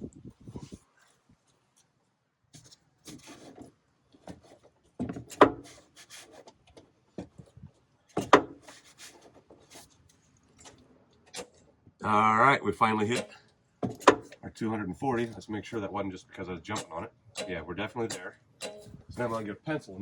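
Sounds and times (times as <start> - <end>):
wrench scraping and rubbing: 13.0 - 14.4, 16.7 - 19.5.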